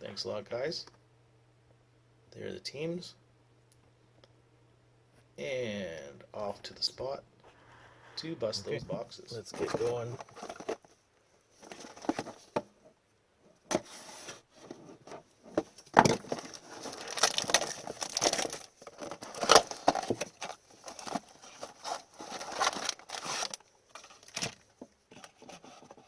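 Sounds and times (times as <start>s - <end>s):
wrappers crinkling and ripping: 16.2s - 24.6s.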